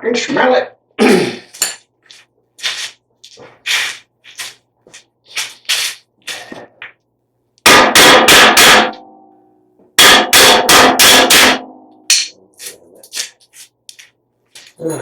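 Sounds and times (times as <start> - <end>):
hammer striking steel: 7.6 - 9.4, 10.0 - 12.4
metal ringing: 10.0 - 12.4.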